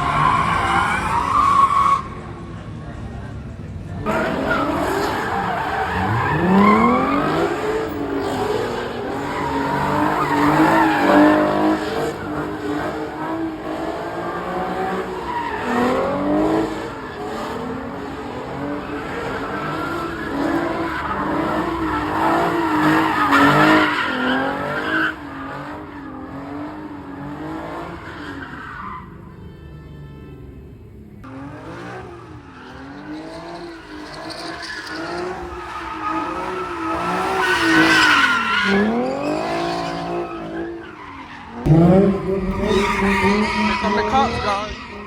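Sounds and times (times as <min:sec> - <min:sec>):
car engine revving hard: 0:04.0 - 0:24.8, 0:41.6 - 0:45.0
tyres squealing: 0:04.1 - 0:12.4, 0:33.1 - 0:45.0.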